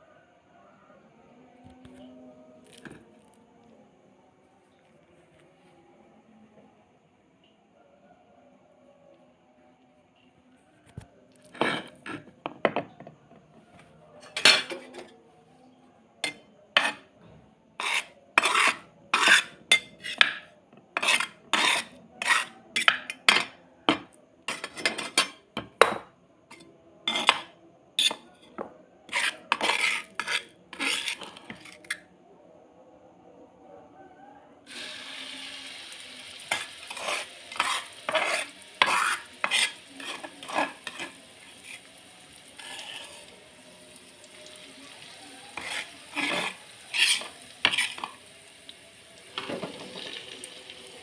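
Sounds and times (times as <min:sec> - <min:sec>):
kitchen utensils clinking: 0:14.2 - 0:15.1, 0:36.4 - 0:41.9, 0:45.6 - 0:48.3, 0:49.3 - 0:50.3.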